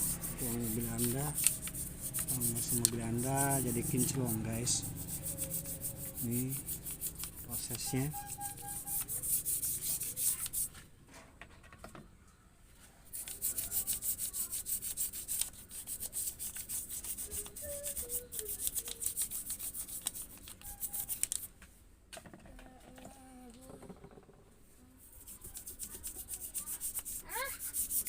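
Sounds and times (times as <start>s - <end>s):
brush scrubbing strokes: 0.0s - 10.8s, 13.2s - 21.3s, 25.0s - 28.0s.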